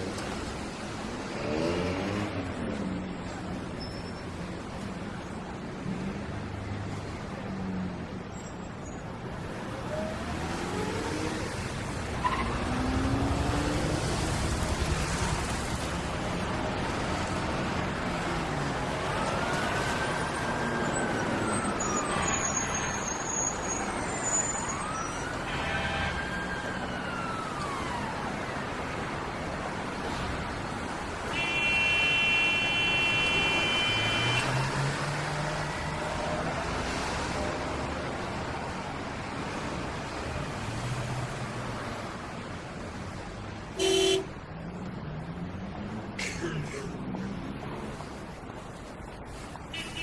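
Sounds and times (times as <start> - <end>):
street traffic noise: 0.0 - 50.0
distant siren wailing: 19.1 - 29.0
vehicle horn blast: 31.3 - 34.4, 43.8 - 44.3.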